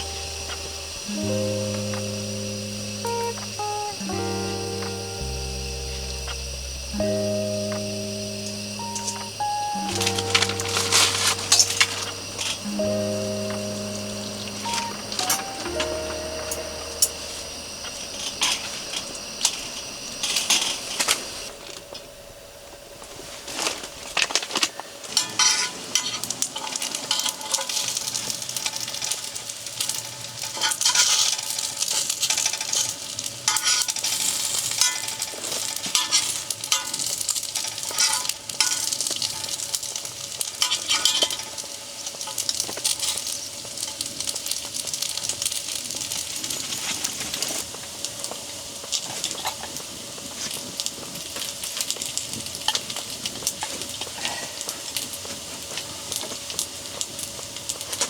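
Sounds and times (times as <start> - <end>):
food sizzling in frying pan: 0.0 - 18.8.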